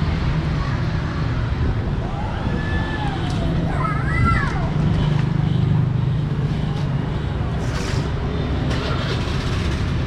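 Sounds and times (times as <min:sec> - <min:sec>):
vehicle engine hum: 0:03.0 - 0:10.0.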